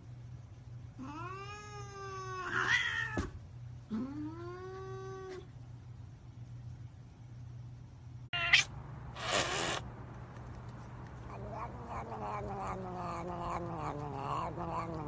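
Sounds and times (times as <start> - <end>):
steady low hum: 0.0 - 2.5, 3.2 - 9.2, 9.8 - 15.0
cat meowing: 1.0 - 3.2, 8.4 - 8.7, 11.3 - 15.0.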